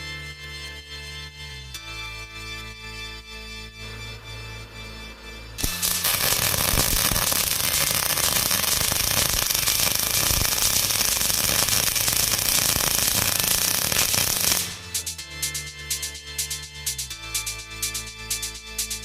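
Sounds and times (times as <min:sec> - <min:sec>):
background music: 0:00.0 - 0:19.0
crackling hiss: 0:05.6 - 0:14.8.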